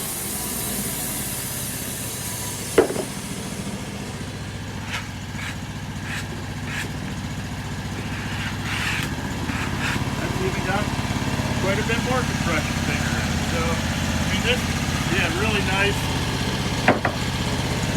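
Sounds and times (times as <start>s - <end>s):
sawmill engine idling: 0.0s - 17.9s
sharp knock: 2.8s - 3.2s.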